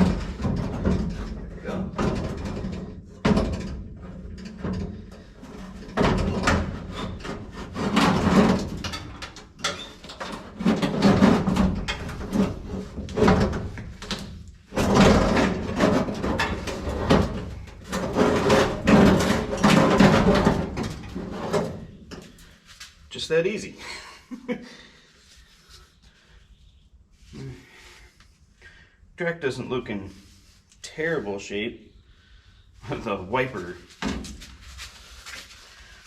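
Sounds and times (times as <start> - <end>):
metal and glass scraping and knocking: 0.0 - 22.4.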